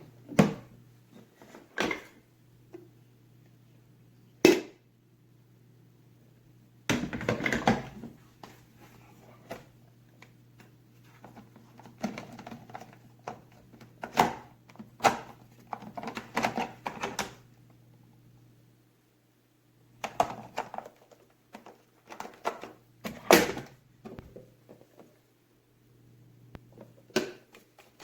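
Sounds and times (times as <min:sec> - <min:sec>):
faint low hum: 0:00.0 - 0:28.0
plastic clatter: 0:11.2 - 0:17.4, 0:20.0 - 0:25.2.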